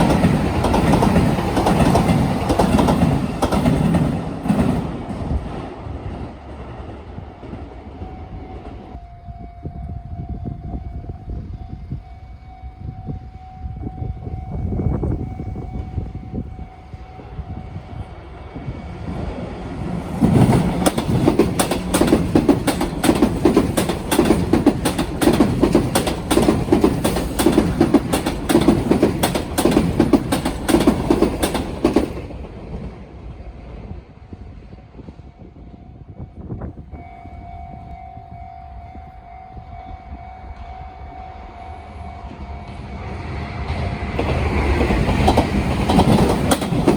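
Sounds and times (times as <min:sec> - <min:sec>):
wheels clacking over rail joints: 0:00.0 - 0:07.7, 0:19.6 - 0:33.0, 0:42.3 - 0:46.9
train rumble with steady tone: 0:00.0 - 0:46.9.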